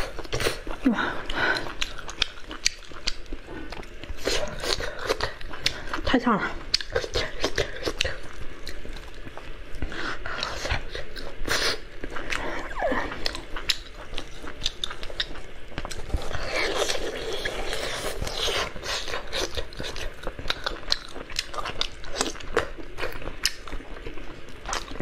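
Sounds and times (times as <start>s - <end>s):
person biting and chewing: 1.5s - 5.9s.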